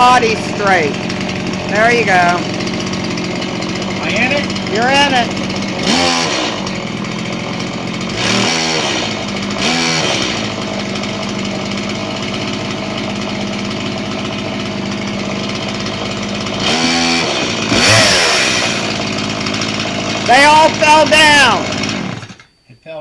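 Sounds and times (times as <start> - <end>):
chainsaw engine revving: 0.0 - 22.5
chainsaw cutting through lumber: 0.0 - 22.6.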